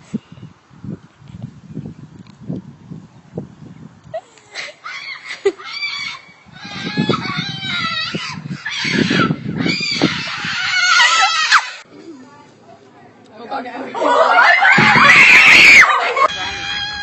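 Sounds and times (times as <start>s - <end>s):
birds calling loudly: 5.0s - 11.8s.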